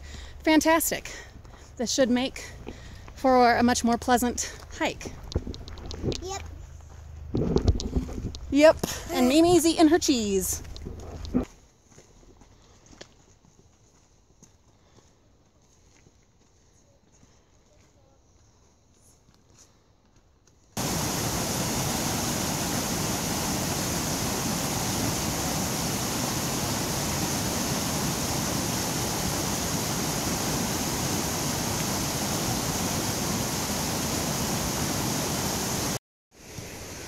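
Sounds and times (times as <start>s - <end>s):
creek water rushing: 20.8s - 37.0s.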